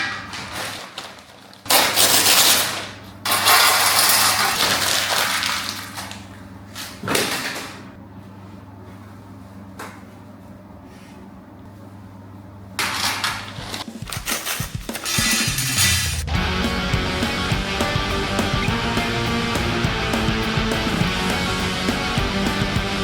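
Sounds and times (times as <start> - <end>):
rustling and clattering parts: 0.0 - 6.2, 12.8 - 16.3
steady low hum: 7.9 - 23.0.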